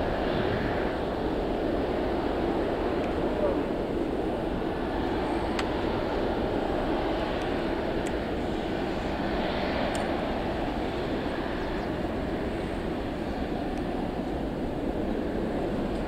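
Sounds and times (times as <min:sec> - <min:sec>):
jet engines roaring: 0:00.0 - 0:16.0.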